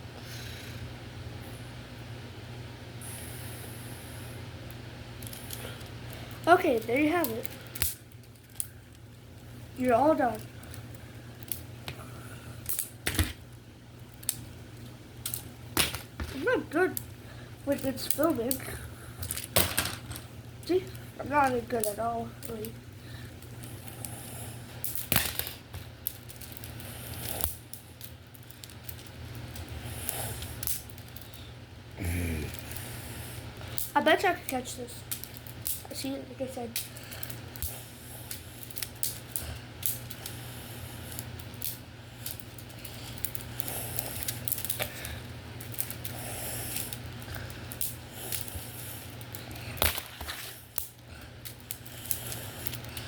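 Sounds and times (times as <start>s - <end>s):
steady low hum: 0.0s - 53.0s
plastic pieces clicking and rattling: 19.2s - 20.2s.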